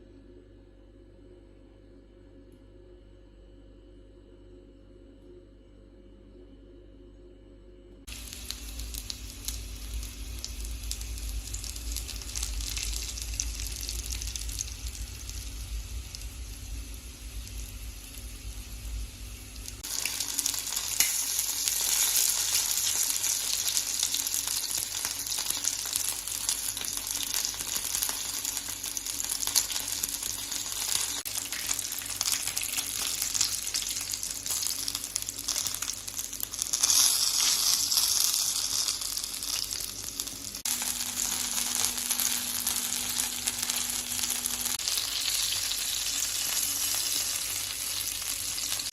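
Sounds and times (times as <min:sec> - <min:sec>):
low rumble: 0:07.3 - 0:19.9
chicken wings sizzling in oil: 0:08.1 - 0:48.9.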